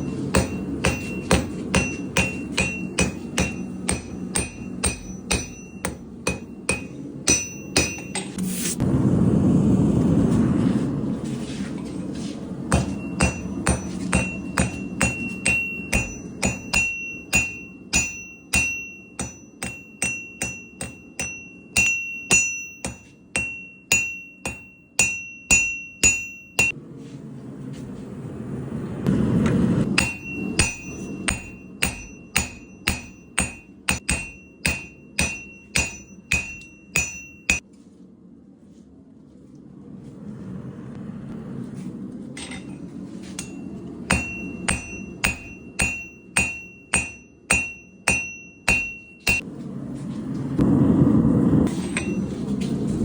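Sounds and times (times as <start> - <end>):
hammer ringing on anvil: 0.0 - 8.4, 12.7 - 26.8, 29.4 - 37.6, 42.4 - 49.4, 51.8 - 52.4
low rushing noise: 8.4 - 12.7, 26.8 - 30.0, 39.5 - 43.1, 49.4 - 53.0.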